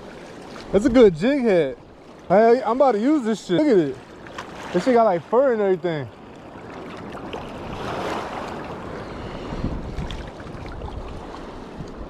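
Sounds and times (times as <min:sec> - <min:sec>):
river water rushing: 0:06.6 - 0:09.6
wind buffeting microphone: 0:07.2 - 0:12.0.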